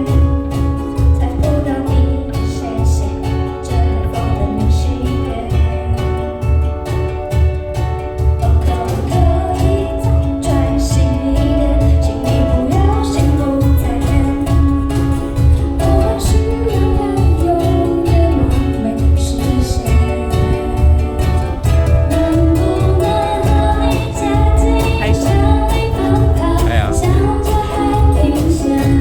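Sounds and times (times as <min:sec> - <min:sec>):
drums keeping a beat: 0:00.0 - 0:29.0
strummed ukuleles: 0:00.0 - 0:29.0
person singing: 0:08.4 - 0:29.0.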